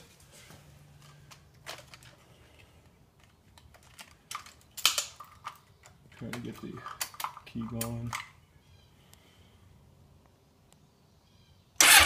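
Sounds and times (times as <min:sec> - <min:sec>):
keys clicking and rattling: 0:03.2 - 0:05.7.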